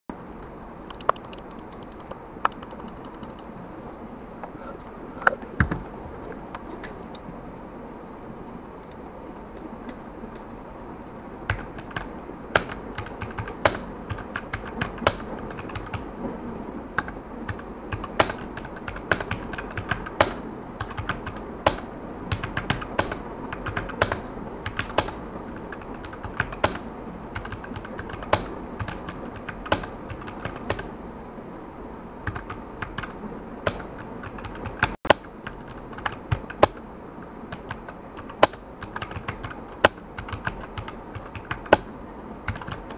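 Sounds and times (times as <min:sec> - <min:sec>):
mechanical keyboard typing: 0:00.9 - 0:03.5, 0:11.5 - 0:16.2, 0:17.0 - 0:30.9, 0:32.2 - 0:36.8, 0:37.5 - 0:41.9, 0:42.5 - 0:42.9.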